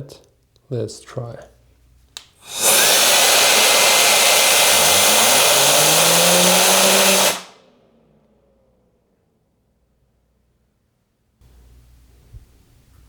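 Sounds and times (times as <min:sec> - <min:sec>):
air duster blowing: 0:02.4 - 0:07.6.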